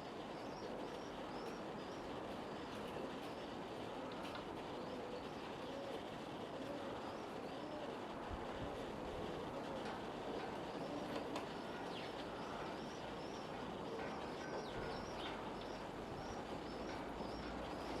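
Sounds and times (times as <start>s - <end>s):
small birds chirping: 0.2s - 3.6s, 10.7s - 18.0s.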